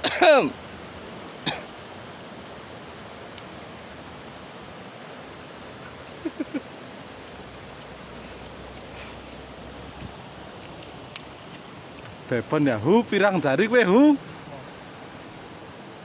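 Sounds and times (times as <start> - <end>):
insect chirping: 0.0 - 16.0.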